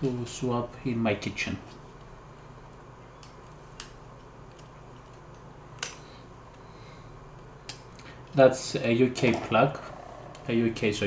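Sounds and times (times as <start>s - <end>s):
low hum: 9.1s - 11.0s.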